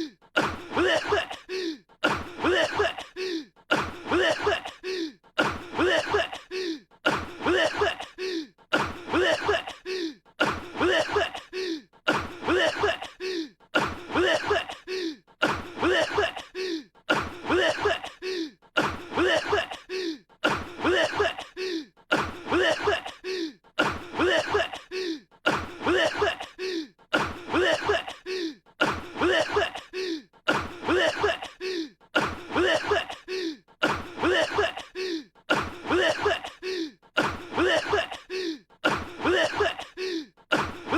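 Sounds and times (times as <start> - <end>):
man coughing: 0.4 - 40.9.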